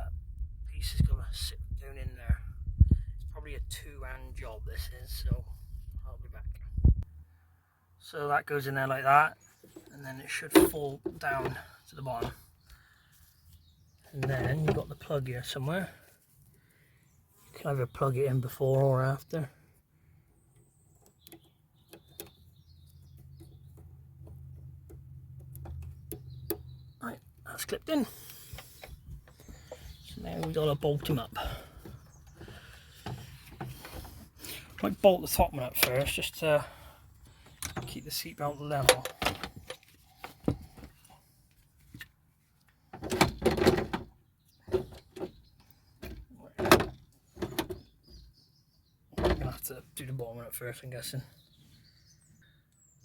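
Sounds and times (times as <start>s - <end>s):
knocks and clunks: 9.7s - 12.5s, 14.1s - 15.1s, 37.4s - 41.0s, 42.9s - 45.4s, 46.0s - 47.9s, 49.2s - 49.7s
seatbelt parts rattling and sliding: 28.3s - 34.9s, 38.8s - 42.1s.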